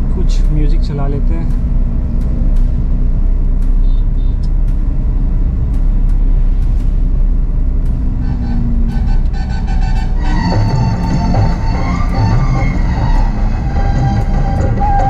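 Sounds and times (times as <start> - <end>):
engine and road rumble: 0.0 - 15.0
short repeating tonal notes: 1.5 - 15.0.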